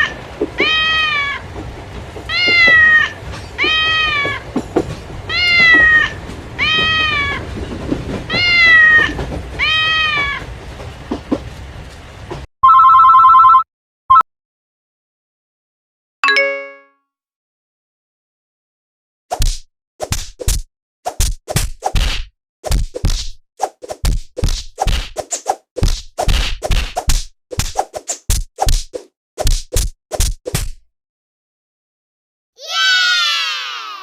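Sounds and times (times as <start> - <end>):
cat meowing: 0.0 - 1.4, 2.3 - 4.4, 5.3 - 7.4, 8.3 - 10.4
two-tone beep: 13.5 - 14.2.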